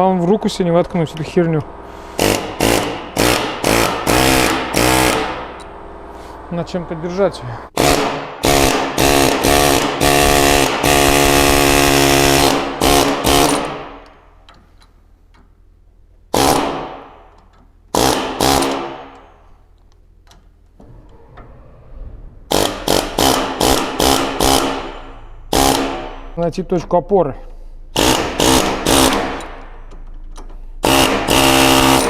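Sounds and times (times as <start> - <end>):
pneumatic air chisel hammering: 1.9 - 5.7, 7.8 - 14.1, 16.3 - 19.6, 22.5 - 26.4, 27.9 - 32.0.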